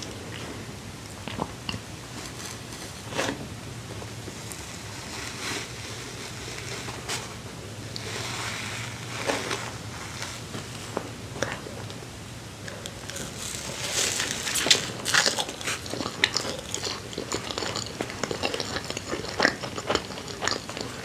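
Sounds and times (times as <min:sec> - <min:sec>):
faint low hum: 0:00.0 - 0:21.0
rustling: 0:04.2 - 0:11.8, 0:13.0 - 0:16.6.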